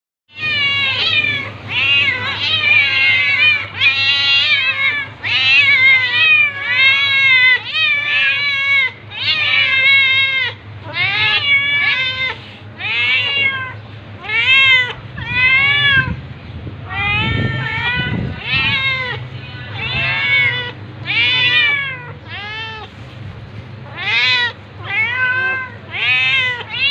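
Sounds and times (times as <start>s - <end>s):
cat meowing: 0.3s - 16.2s, 16.8s - 22.9s, 23.8s - 26.9s.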